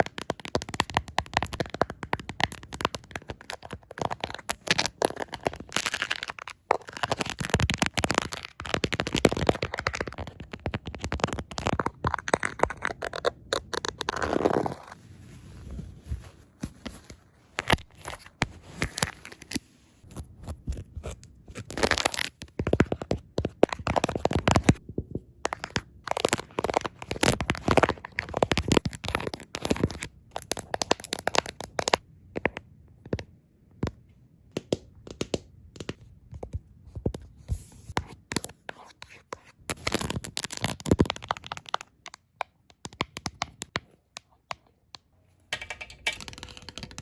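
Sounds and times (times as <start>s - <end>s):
tapping and scratching on phone cases: 20.5s - 33.3s, 34.5s - 44.7s, 45.5s - 47.0s.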